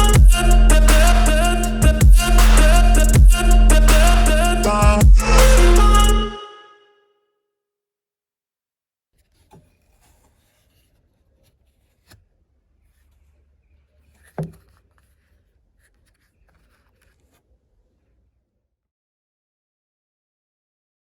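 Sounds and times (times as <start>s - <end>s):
soft rubbing and scraping: 9.2s - 18.3s.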